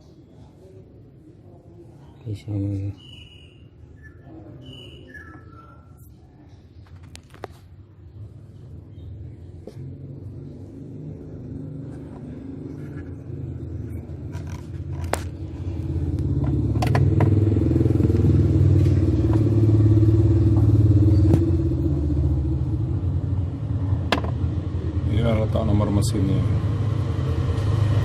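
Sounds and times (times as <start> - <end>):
vehicle engine rumbling: 6.8 - 28.0
sharp clicks and knocks: 16.4 - 17.4, 24.1 - 24.4.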